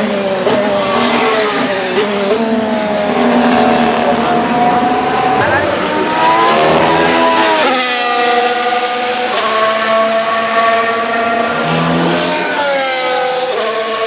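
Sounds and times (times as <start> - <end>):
race car engine at high revs: 0.0 - 14.0.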